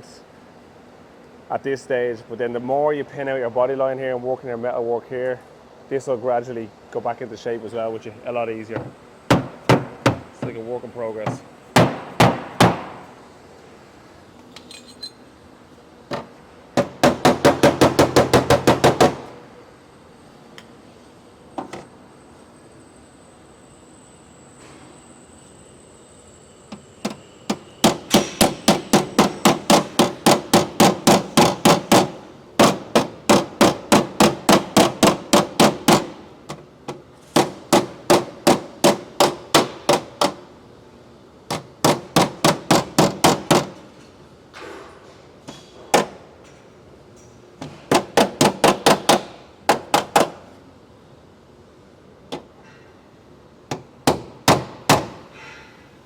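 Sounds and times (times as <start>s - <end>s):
hammer tapping on sheet metal: 16.8s - 19.3s.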